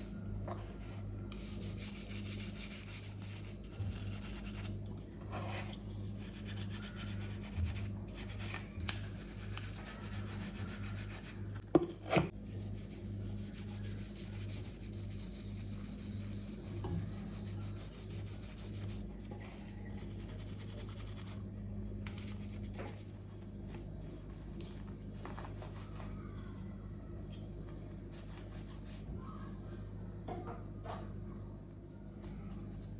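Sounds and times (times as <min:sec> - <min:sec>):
scrubbing a washing machine: 0:12.7 - 0:21.2.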